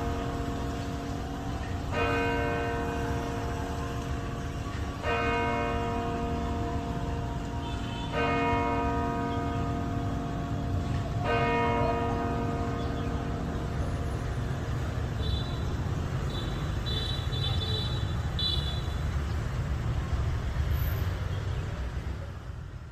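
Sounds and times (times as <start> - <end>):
church bell ringing: 0.0 - 15.6
low rumble of street traffic: 0.0 - 22.9.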